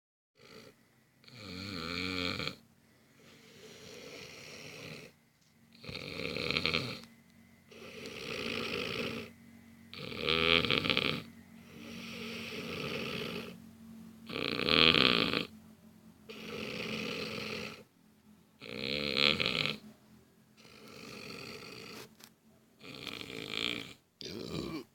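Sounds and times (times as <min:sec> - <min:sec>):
person snoring: 0:00.4 - 0:02.6, 0:03.2 - 0:05.2, 0:05.8 - 0:07.1, 0:07.7 - 0:09.3, 0:09.9 - 0:13.6, 0:14.3 - 0:15.5, 0:16.3 - 0:17.9, 0:18.6 - 0:19.8, 0:20.6 - 0:22.1, 0:22.8 - 0:24.9
quiet breathing: 0:00.4 - 0:13.8, 0:19.5 - 0:24.0.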